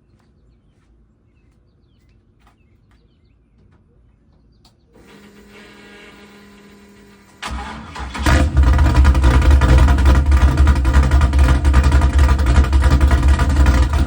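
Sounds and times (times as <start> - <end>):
faint bird chirping: 0.0 - 5.0
starter motor cranking: 5.0 - 14.0
engine firing with loud burst: 7.4 - 14.0.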